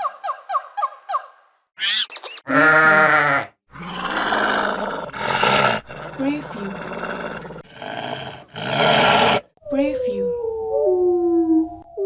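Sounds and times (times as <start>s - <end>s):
pitched animal call: 1.8s - 9.4s
rough noisy animal calls: 1.8s - 9.4s.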